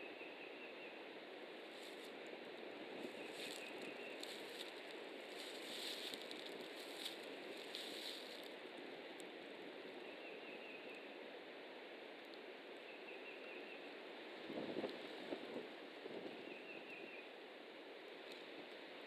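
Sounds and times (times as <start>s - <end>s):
light rustling: 3.0s - 8.5s
strong wind on microphone: 14.4s - 16.4s.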